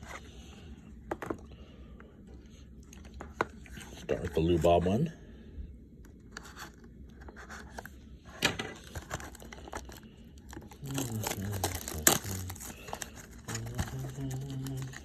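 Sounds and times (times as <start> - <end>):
card pack wrapper tearing and crinkling: 8.8 - 15.0.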